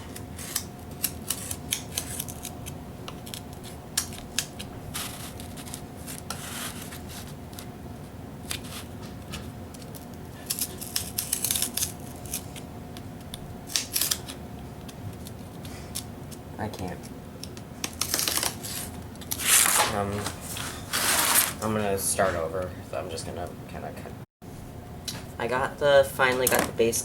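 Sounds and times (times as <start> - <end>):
scissors snipping: 0.1 - 6.2, 9.8 - 12.6
cardboard being cut: 18.0 - 20.2, 20.9 - 21.6.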